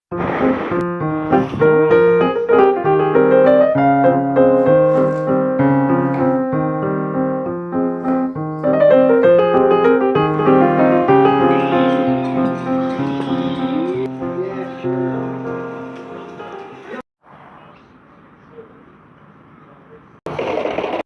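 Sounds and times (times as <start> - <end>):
gentle piano music: 0.2 - 17.0.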